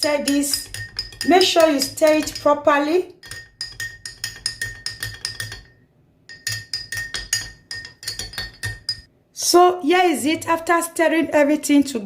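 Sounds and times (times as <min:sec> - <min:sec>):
spoon clinking in glass cup: 0:00.0 - 0:09.1.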